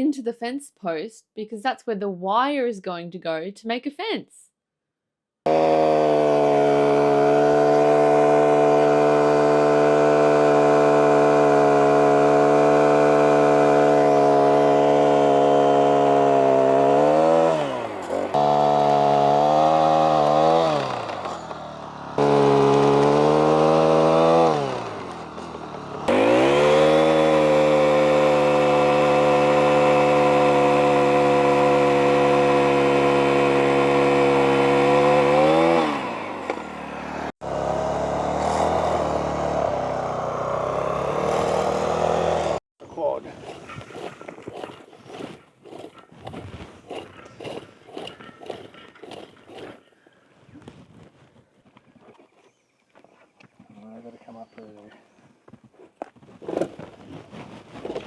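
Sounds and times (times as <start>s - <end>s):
petrol drill engine revving: 5.5s - 42.6s.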